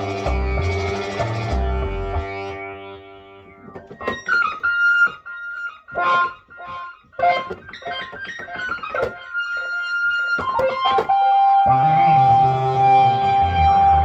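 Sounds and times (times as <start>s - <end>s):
pulsing bass line: 0.0s - 3.4s, 11.2s - 14.0s
electronic synthesizer music: 0.0s - 14.0s
plucked notes with echoes: 0.0s - 14.0s.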